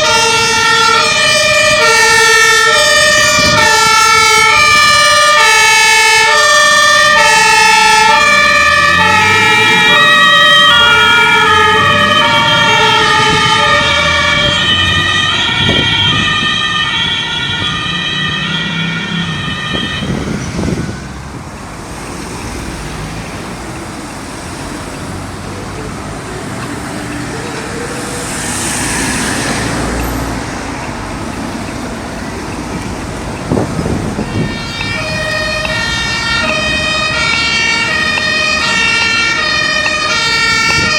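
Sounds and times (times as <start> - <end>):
road traffic noise: 0.0 - 40.9
two-tone emergency siren: 0.0 - 40.9
vehicle passing by: 0.1 - 40.9.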